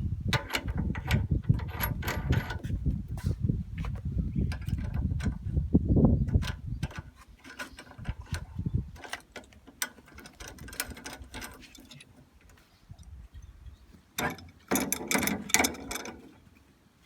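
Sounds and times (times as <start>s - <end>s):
hand tools clanking on metal: 6.3s - 12.7s, 14.2s - 16.4s.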